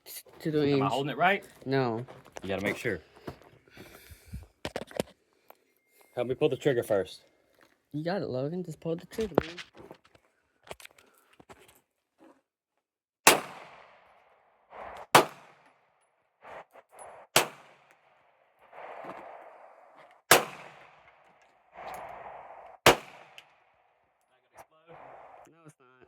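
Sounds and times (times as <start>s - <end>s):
handgun shots: 13.3s - 14.0s, 15.0s - 15.7s, 17.4s - 17.9s, 20.3s - 21.1s, 22.8s - 23.6s.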